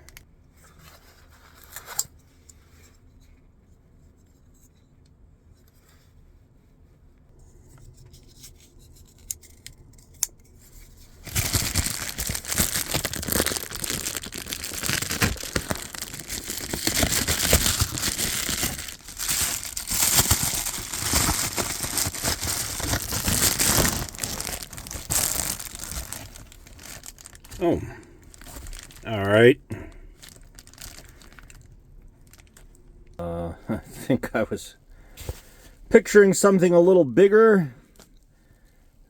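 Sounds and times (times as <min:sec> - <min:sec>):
packaging tearing and crinkling: 0:11.2 - 0:29.3, 0:30.2 - 0:31.7, 0:32.3 - 0:32.6.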